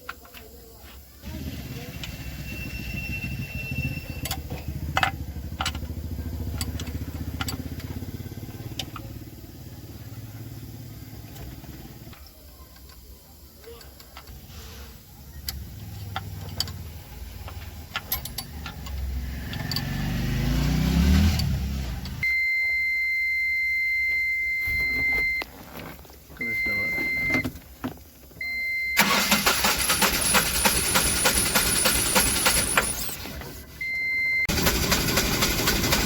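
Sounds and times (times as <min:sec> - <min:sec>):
diesel engine revving: 0:01.3 - 0:12.1, 0:15.5 - 0:22.3, 0:29.0 - 0:33.7, 0:34.4 - 0:36.0
short beeps: 0:02.1 - 0:04.4, 0:22.2 - 0:25.4, 0:26.4 - 0:27.5, 0:28.4 - 0:29.0, 0:33.8 - 0:34.5
high steady beep: 0:22.2 - 0:25.4, 0:26.4 - 0:27.5, 0:28.4 - 0:29.0, 0:33.8 - 0:34.5
loud rattling clatter: 0:29.0 - 0:33.0, 0:34.5 - 0:36.0.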